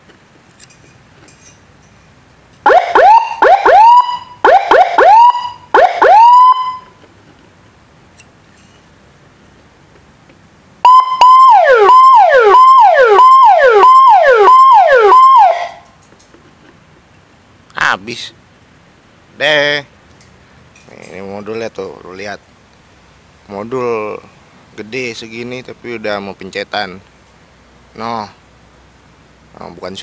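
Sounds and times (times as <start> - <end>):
electronic siren through loudspeaker: 2.7 - 6.9, 10.8 - 15.8.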